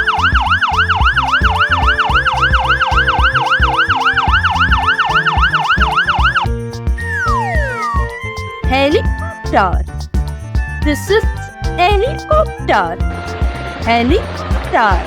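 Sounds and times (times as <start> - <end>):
fire engine siren yelping: 0.0 - 6.5.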